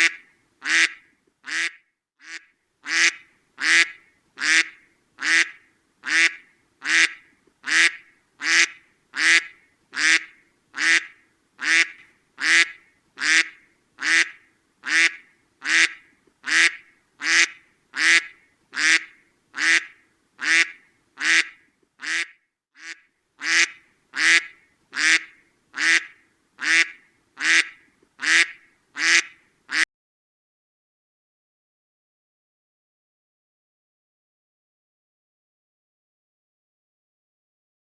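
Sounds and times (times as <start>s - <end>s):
duck quacking: 0.0s - 29.9s.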